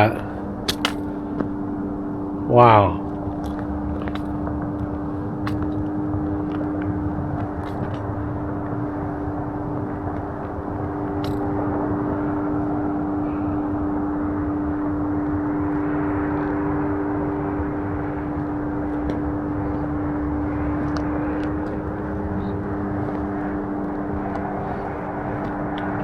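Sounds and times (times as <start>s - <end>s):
engine drone: 0.0s - 26.0s
lower tone: 0.0s - 26.0s
rumbling noise: 0.0s - 26.0s.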